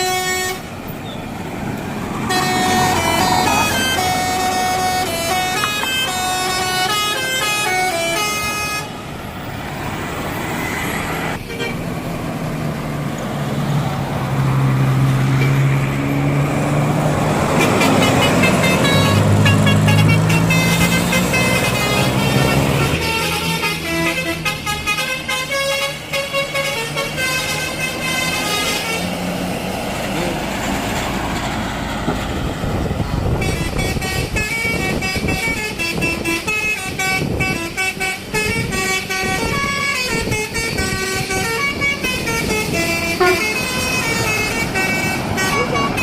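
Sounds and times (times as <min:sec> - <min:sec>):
multi-tone air horn tune: 0:00.0 - 0:00.7, 0:02.3 - 0:09.0, 0:17.6 - 0:29.1, 0:33.4 - 0:46.0
bus engine passing: 0:00.0 - 0:46.0.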